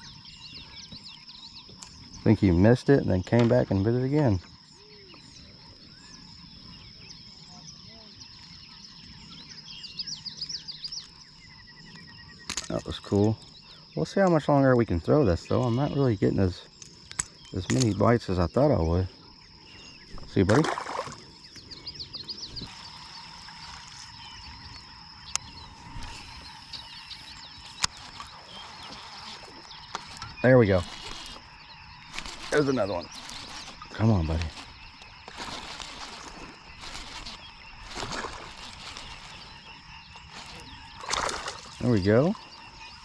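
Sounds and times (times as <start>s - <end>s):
high insect drone: 0.0s - 43.0s
small birds chirping: 0.0s - 43.0s
faint water sounds: 10.9s - 43.0s.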